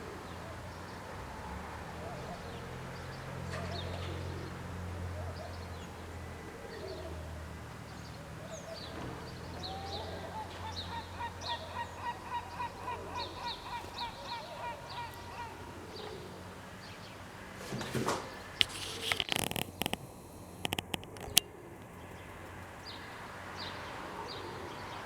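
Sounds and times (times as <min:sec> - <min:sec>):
bird calling in rapid notes: 0:09.6 - 0:16.5.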